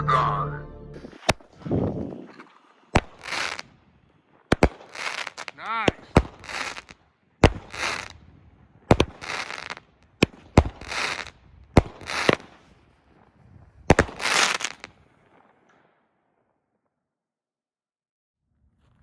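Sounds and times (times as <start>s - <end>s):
firework launch reports: 1.0s - 3.8s, 4.5s - 15.5s
firework breaking overhead: 1.0s - 16.6s.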